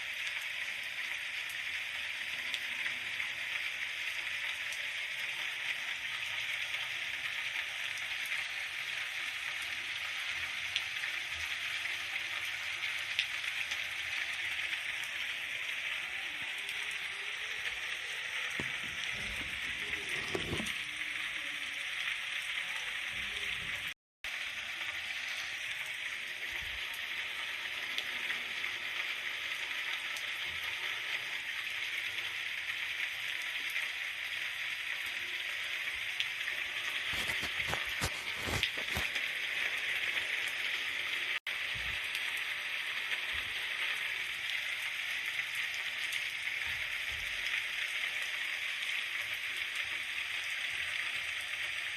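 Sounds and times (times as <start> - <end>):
steady rain falling: 22.4 - 51.9
heavier rain patters: 36.7 - 43.7.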